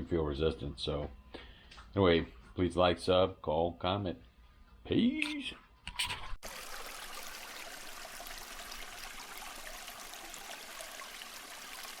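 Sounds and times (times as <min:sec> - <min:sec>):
running water rushing: 0:06.4 - 0:12.0.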